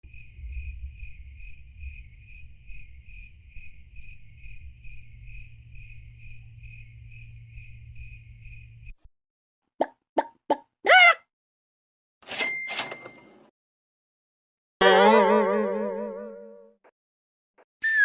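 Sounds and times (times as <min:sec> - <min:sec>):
cricket chirping: 0:00.0 - 0:09.0
low steady hum: 0:00.0 - 0:09.0.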